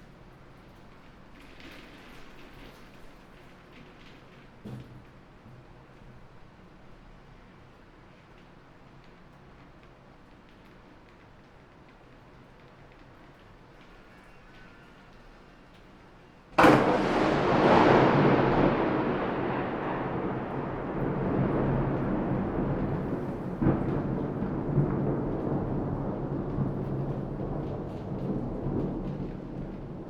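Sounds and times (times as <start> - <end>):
steady rain: 0.0 - 30.0
rolling thunder rumble: 16.6 - 30.0
thunder crack: 16.6 - 30.0.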